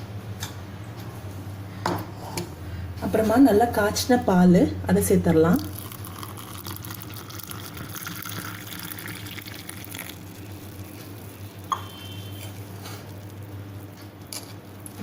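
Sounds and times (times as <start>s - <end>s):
milk pouring into cup: 5.6s - 13.4s.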